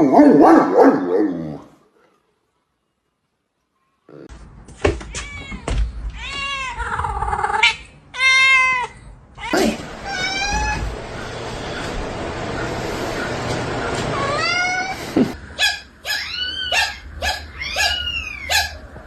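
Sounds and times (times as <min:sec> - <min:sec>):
cat meowing: 0:05.1 - 0:10.9, 0:14.2 - 0:15.0, 0:16.1 - 0:18.8.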